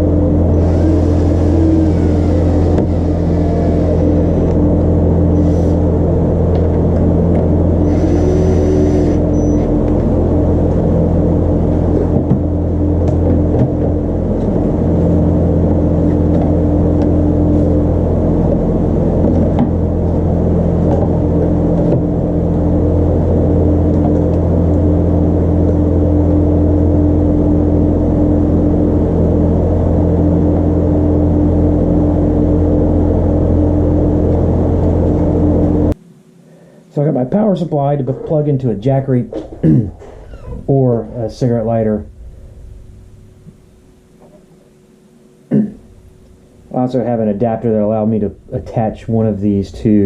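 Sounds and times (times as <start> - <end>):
machine drone with tones: 0.0 - 50.0.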